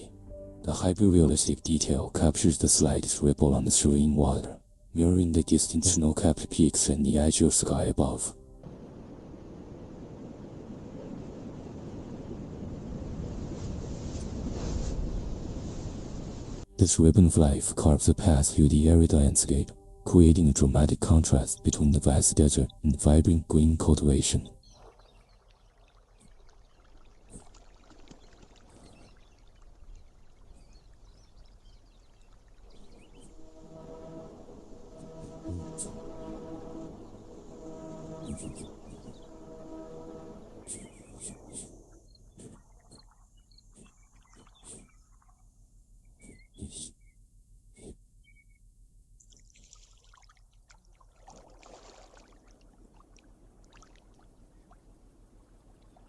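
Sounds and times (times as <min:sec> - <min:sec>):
water lapping: 0:24.6 - 0:45.4, 0:49.3 - 0:56.0.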